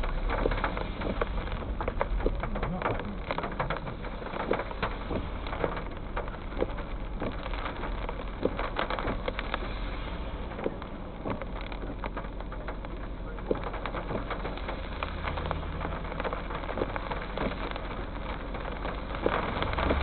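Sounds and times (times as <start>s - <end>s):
rain falling: 0.0s - 20.0s
raindrops tapping close by: 0.0s - 20.0s
steady low rumble: 0.0s - 20.0s.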